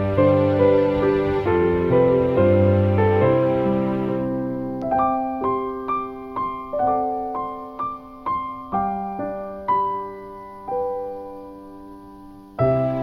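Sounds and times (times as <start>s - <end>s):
slow piano music: 0.0s - 13.0s.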